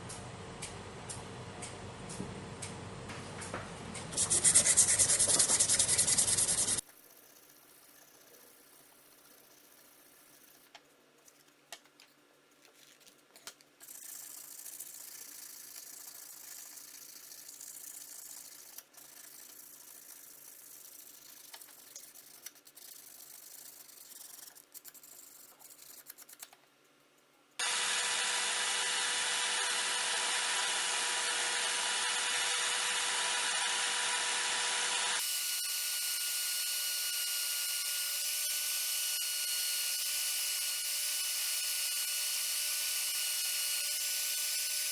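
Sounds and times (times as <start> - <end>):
electric power tool whining: 27.6 - 44.9.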